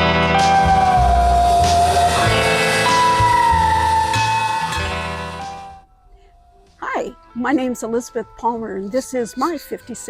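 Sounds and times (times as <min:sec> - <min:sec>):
pulsing bass line: 0:00.0 - 0:05.8
held lead notes sliding down: 0:00.0 - 0:05.9.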